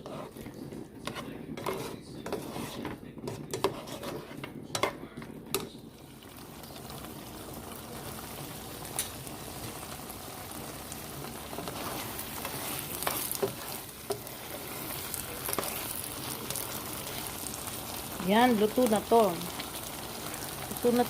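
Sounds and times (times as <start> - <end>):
stir-fry sizzling in a pan: 0.0 - 21.0
utensil clicking against pan: 1.0 - 5.7.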